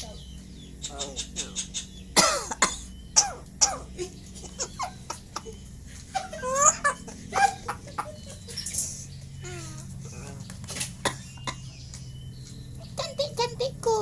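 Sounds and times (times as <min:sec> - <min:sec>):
starling calling: 0:00.0 - 0:14.0.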